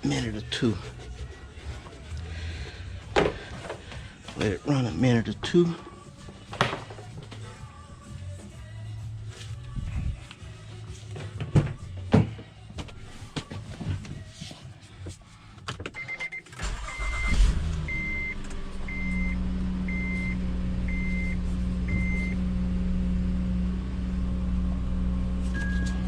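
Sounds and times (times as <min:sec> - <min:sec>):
car engine starting and idling: 0:16.3 - 0:26.0.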